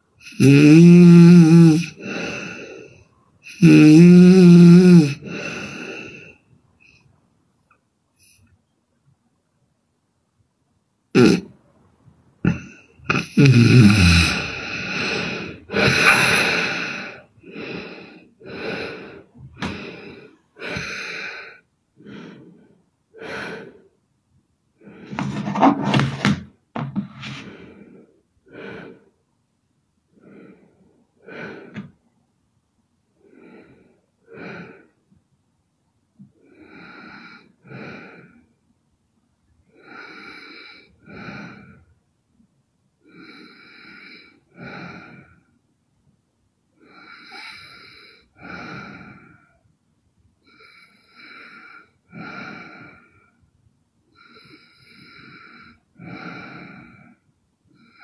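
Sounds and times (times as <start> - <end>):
quiet uneven breathing: 0.0 - 7.2, 12.4 - 24.0, 24.8 - 29.2, 30.1 - 32.1, 33.2 - 35.2, 36.2 - 38.6, 39.6 - 42.0, 43.0 - 45.7, 46.7 - 49.7, 50.4 - 58.0
woman snoring: 0.2 - 2.9, 3.5 - 6.4, 11.2 - 11.5, 12.5 - 21.6, 46.8 - 49.4.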